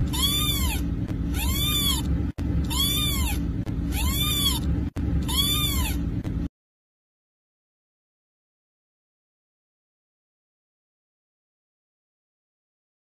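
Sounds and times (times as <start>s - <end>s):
kitten meowing: 0.0s - 6.1s
low rumble: 0.0s - 6.5s.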